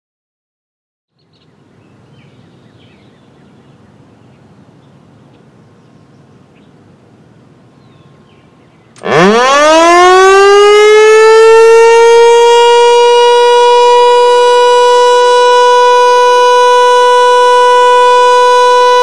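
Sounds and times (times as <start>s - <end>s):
low outdoor rumble: 1.2s - 9.0s.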